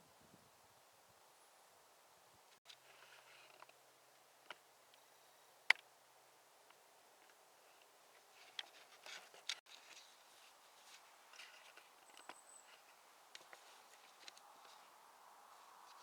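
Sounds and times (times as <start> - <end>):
faint rustles and clicks: 2.6 - 5.3, 6.6 - 16.0.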